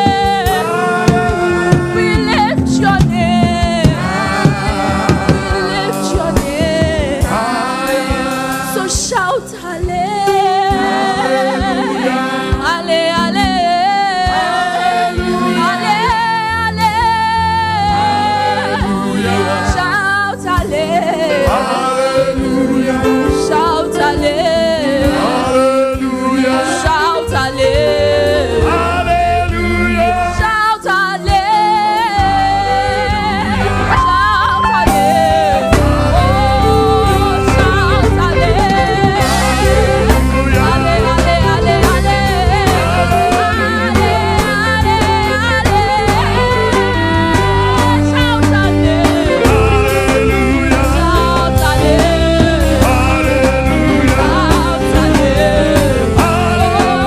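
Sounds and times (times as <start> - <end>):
low bass notes: 0.0 - 8.6, 27.3 - 30.6, 32.2 - 57.0
gospel choir singing: 0.0 - 57.0.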